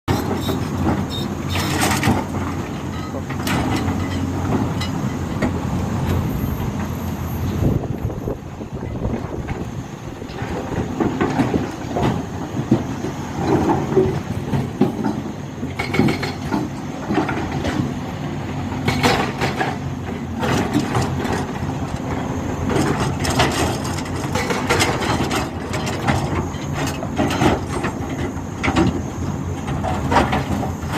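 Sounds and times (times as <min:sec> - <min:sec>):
diesel machinery running: 0:00.1 - 0:30.9
knocks and clanks: 0:10.3 - 0:17.9, 0:18.8 - 0:19.8.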